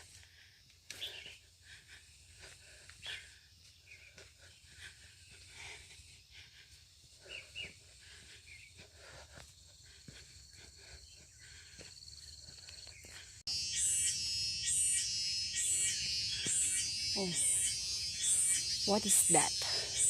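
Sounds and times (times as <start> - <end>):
bird-like chirps: 12.8 - 20.0
high insect-like buzz: 13.5 - 20.0.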